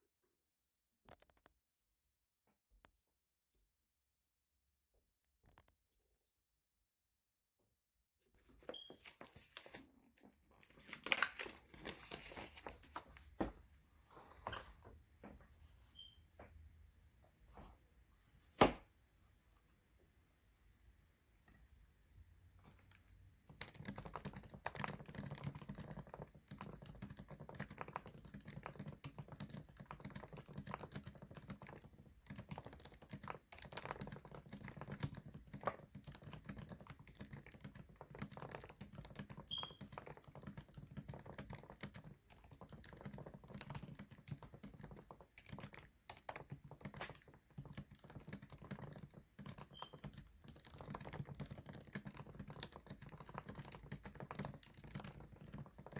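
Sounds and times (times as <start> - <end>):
fast keyboard typing: 22.8 - 55.9.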